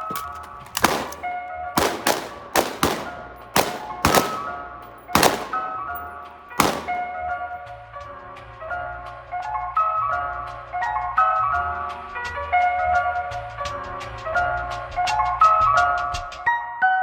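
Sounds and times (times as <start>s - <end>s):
gunshots: 0.0s - 7.4s.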